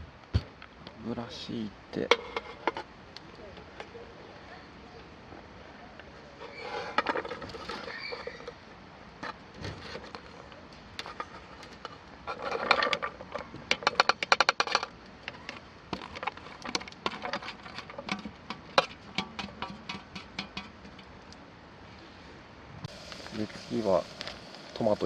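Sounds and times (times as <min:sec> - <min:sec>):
cooking hiss: 0:18.4 - 0:25.0.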